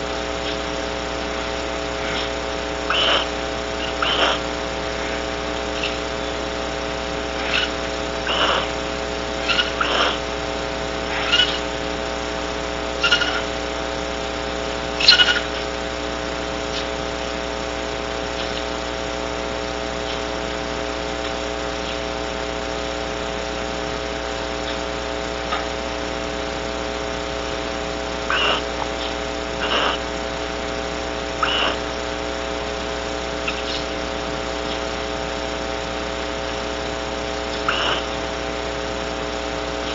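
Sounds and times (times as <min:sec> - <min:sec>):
electrical hum: 0:00.0 - 0:39.9
sharp animal calls: 0:00.2 - 0:11.9, 0:12.9 - 0:13.8, 0:14.9 - 0:15.8, 0:16.6 - 0:17.0, 0:18.3 - 0:19.0, 0:20.0 - 0:20.6, 0:28.2 - 0:30.2, 0:31.3 - 0:32.0, 0:33.3 - 0:35.0, 0:37.4 - 0:38.3.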